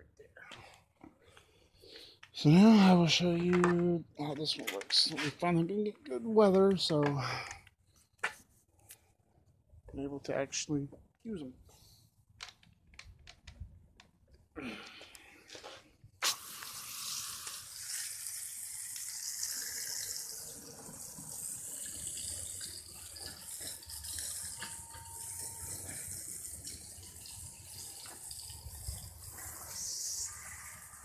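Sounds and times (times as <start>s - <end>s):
hose spraying water: 16.2s - 31.0s.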